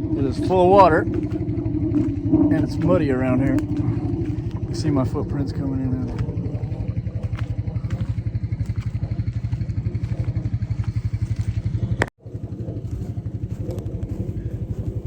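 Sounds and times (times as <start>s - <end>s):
atv engine running: 0.0s - 15.0s.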